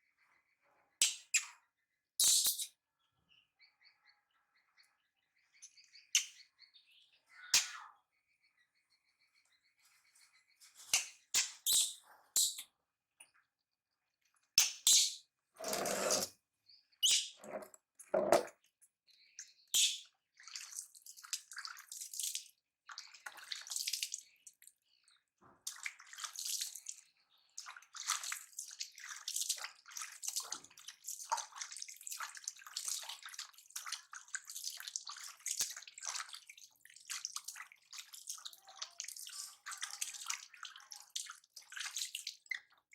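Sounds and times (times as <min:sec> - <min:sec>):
water splashing and dripping: 0:19.8 - 0:24.6, 0:25.5 - 0:42.8.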